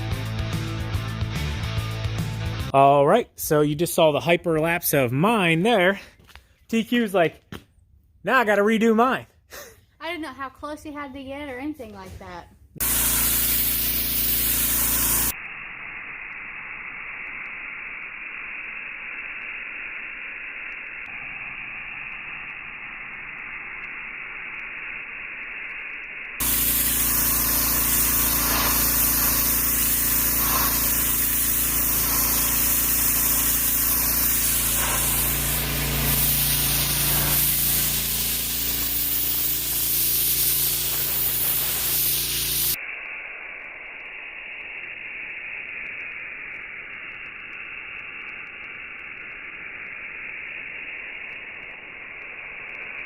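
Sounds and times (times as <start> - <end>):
pressure washer engine hum: 12.8 - 15.3, 26.4 - 42.8
water jet hissing: 12.8 - 25.6, 26.4 - 53.0.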